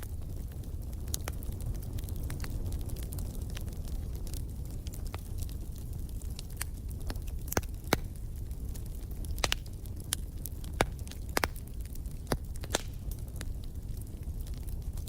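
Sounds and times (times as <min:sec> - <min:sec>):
low rumble of flames: 0:00.0 - 0:15.0
wood fire crackling and popping: 0:00.0 - 0:15.0.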